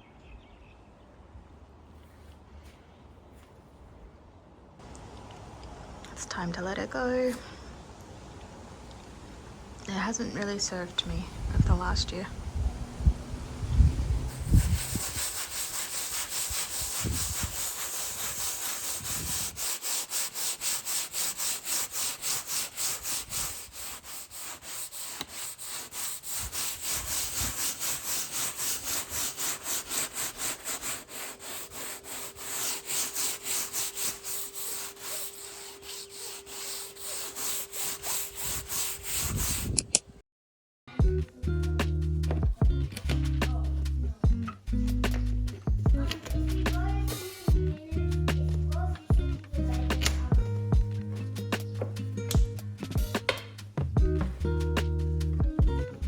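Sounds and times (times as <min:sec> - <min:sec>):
sandpaper rubbing on canvas: 0:14.1 - 0:39.8.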